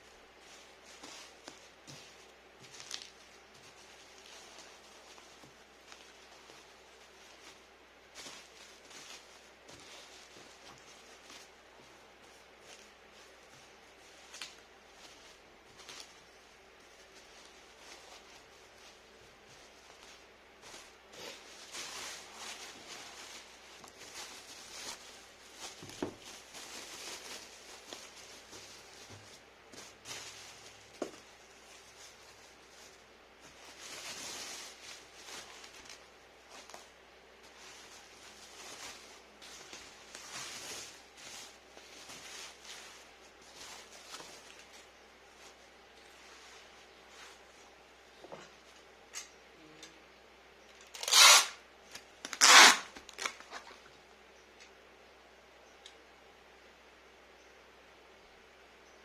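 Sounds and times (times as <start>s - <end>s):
packaging rustling: 0.1s - 47.6s, 50.8s - 53.9s
packing material tearing: 50.8s - 53.8s.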